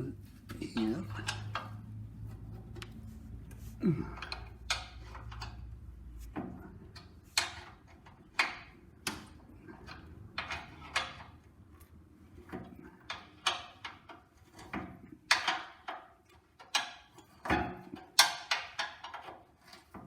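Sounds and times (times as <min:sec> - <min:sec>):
spanner clicking on steel nuts: 0:04.2 - 0:05.8, 0:12.9 - 0:20.0.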